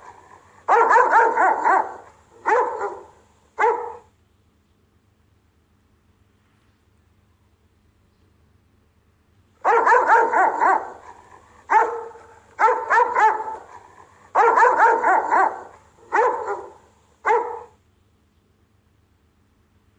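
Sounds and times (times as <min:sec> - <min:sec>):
dog barking: 0:00.0 - 0:04.1, 0:09.6 - 0:17.8.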